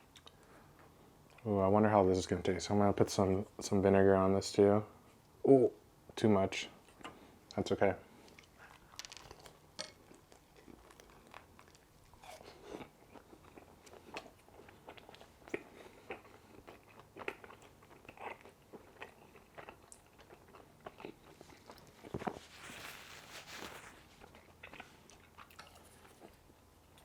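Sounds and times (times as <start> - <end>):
person chewing food: 8.2 - 27.0.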